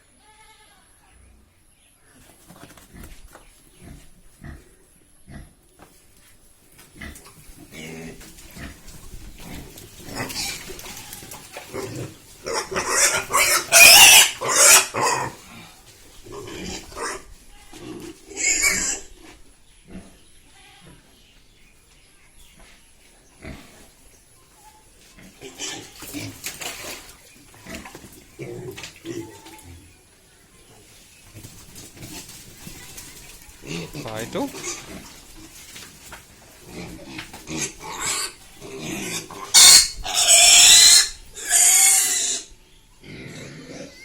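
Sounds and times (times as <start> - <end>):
pigs grunting: 2.9 - 5.6, 6.9 - 21.1, 23.3 - 24.0, 25.1 - 29.9, 33.6 - 35.7, 36.5 - 44.0
shrill pig cries: 10.2 - 15.4, 18.3 - 19.1, 37.5 - 44.0.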